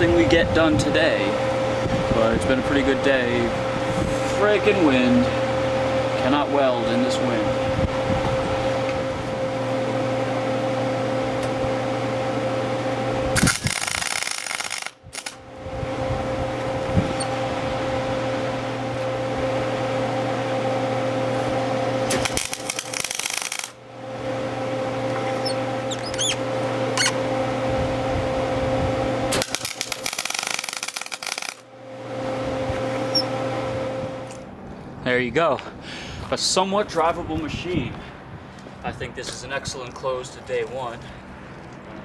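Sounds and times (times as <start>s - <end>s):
steady hum: 0.0s - 39.8s
welding arc crackling: 13.4s - 15.4s, 22.0s - 23.8s, 29.3s - 31.7s.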